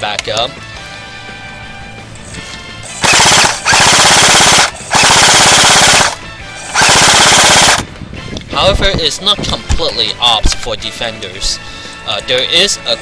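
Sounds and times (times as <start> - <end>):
airsoft rifle firing full auto: 3.0 - 7.8.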